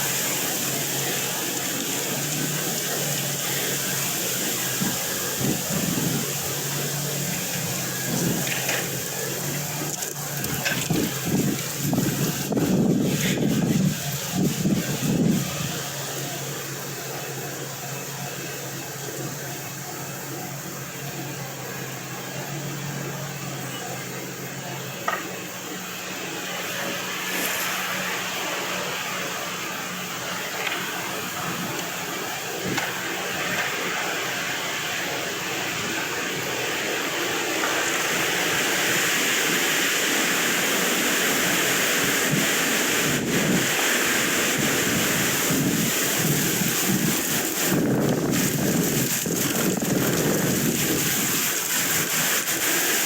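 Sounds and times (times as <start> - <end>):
wind blowing across microphone: 10.4 - 15.8, 41.4 - 52.6.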